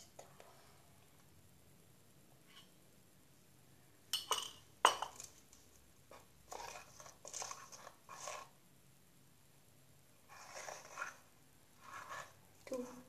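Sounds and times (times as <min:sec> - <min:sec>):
utensil scraping bowl: 0:06.1 - 0:08.6, 0:10.2 - 0:13.0.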